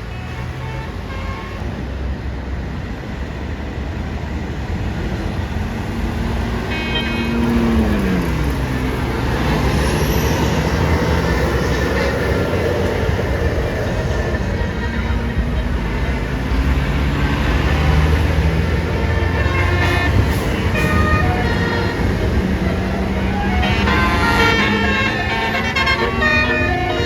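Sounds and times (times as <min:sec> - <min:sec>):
heavy vehicles driving past: 0:00.0 - 0:27.0
vehicle horn notes: 0:19.1 - 0:22.5, 0:23.4 - 0:27.0.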